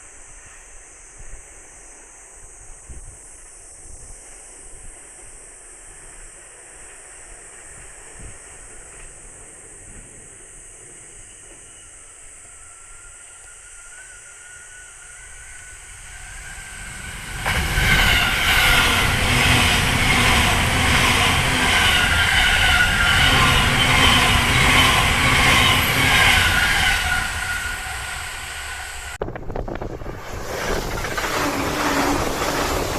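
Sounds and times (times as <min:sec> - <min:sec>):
trains passing at speed: 0:04.1 - 0:32.9
wheels rumbling on rails: 0:14.7 - 0:32.9.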